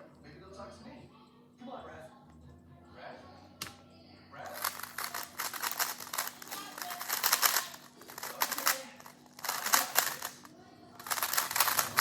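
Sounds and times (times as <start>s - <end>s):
puzzle cube clicking turns: 4.6s - 12.0s.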